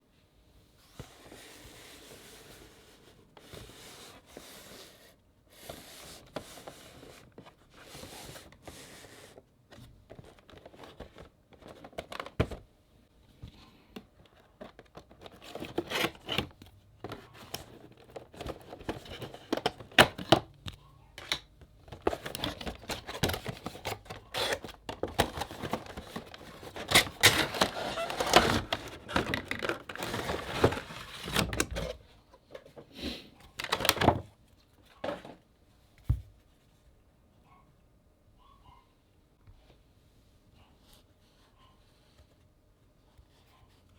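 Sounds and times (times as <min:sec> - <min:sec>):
packaging rustling and crinkling: 0:21.8 - 0:32.0, 0:33.6 - 0:34.3.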